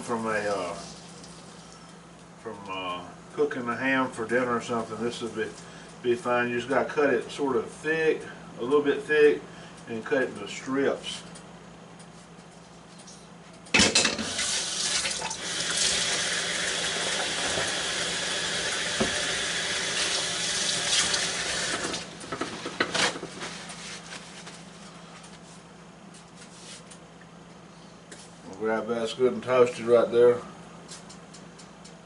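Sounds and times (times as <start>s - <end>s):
tap running into sink: 18.9s - 19.3s.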